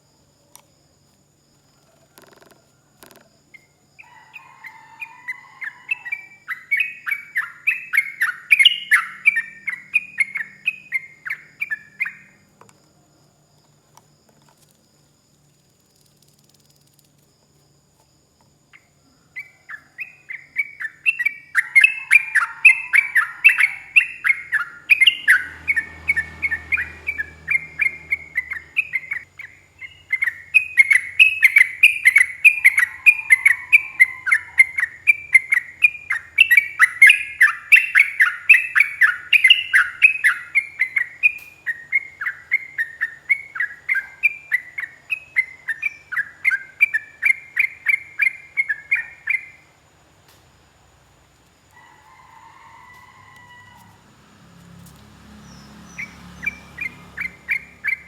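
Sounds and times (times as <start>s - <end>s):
bird chattering song: 4.6s - 12.4s, 18.7s - 49.6s, 55.4s - 58.0s.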